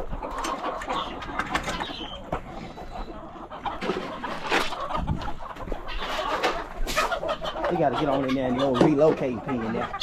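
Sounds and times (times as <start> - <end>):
chickens clucking: 0.0 - 10.0.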